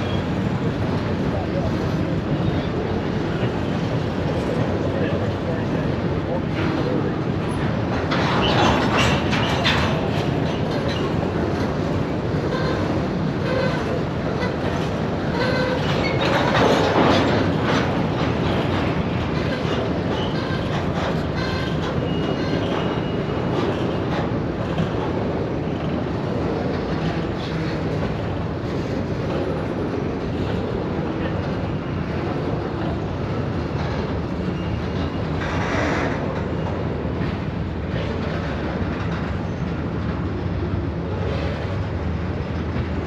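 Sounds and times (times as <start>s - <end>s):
train cars rumbling: 0.0s - 43.0s
wheels clanking over rail joints: 0.0s - 43.0s.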